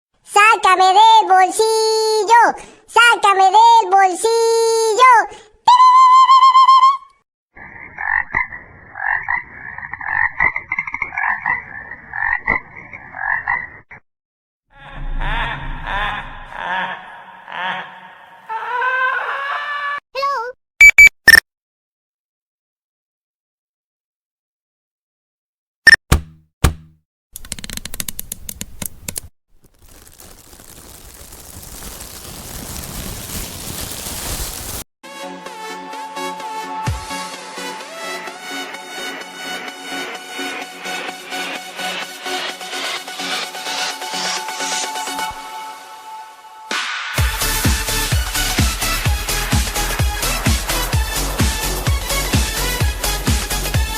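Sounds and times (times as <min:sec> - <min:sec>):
frog croaking: 0:07.6 - 0:14.0
crackling wood-like creaks: 0:27.4 - 0:34.8
plastic crinkling: 0:29.5 - 0:34.8.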